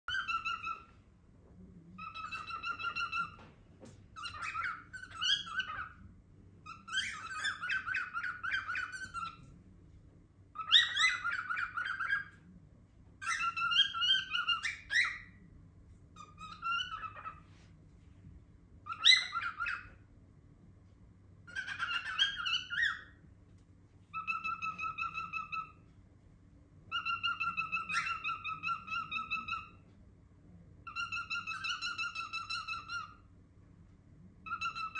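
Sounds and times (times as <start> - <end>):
cockatiel warbling calls: 0.1 - 0.9, 2.0 - 3.5, 4.1 - 6.0, 6.6 - 9.5, 10.6 - 12.4, 13.2 - 15.4, 16.2 - 17.5, 18.8 - 20.0, 21.5 - 23.2, 24.1 - 25.8, 26.9 - 29.8, 30.9 - 33.2, 34.4 - 34.9.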